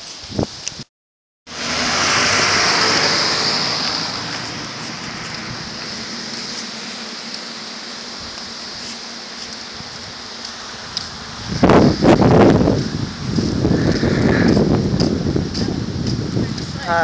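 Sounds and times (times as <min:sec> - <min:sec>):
floodwater rushing: 0:01.5 - 0:17.0.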